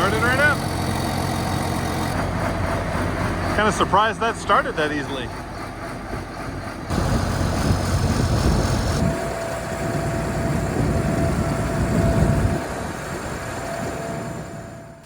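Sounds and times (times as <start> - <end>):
diesel engine rumbling: 0.0 - 15.0
thin steady whine: 6.9 - 15.0.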